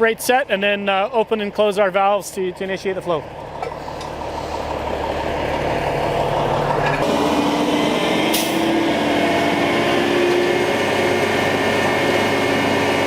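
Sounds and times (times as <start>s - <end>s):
pump truck engine droning: 2.6s - 13.0s.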